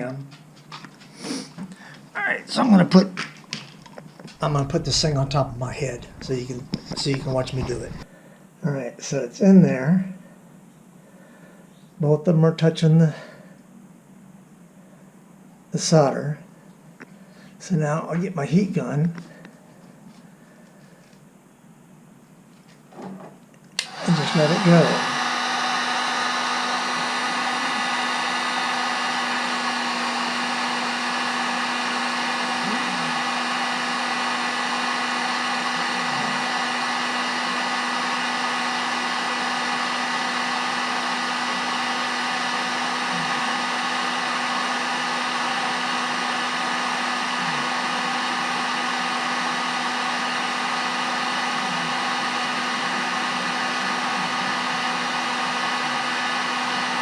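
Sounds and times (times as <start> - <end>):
heat gun blowing air: 1.1 - 1.9, 4.4 - 8.1, 23.8 - 57.0.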